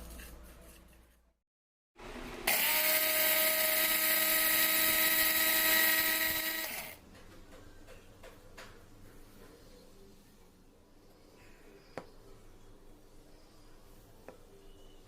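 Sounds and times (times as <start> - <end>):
electric spice grinder whine: 2.3 - 7.0.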